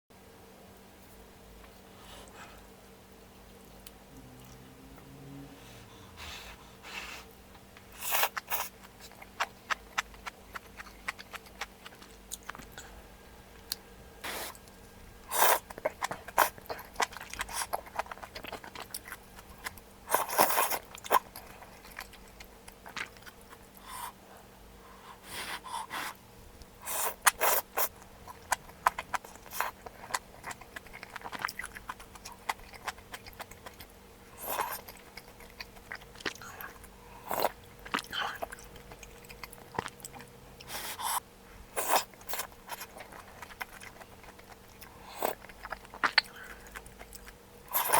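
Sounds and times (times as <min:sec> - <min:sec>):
faint steady hum: 0:00.1 - 0:47.9
chewing: 0:07.8 - 0:13.0, 0:14.5 - 0:24.2, 0:26.8 - 0:47.9.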